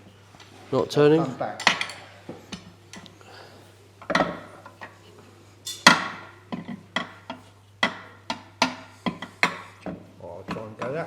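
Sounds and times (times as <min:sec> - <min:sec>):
hand tools knocking on metal: 0:01.6 - 0:03.1, 0:05.7 - 0:11.0
metal tapping: 0:01.6 - 0:03.1.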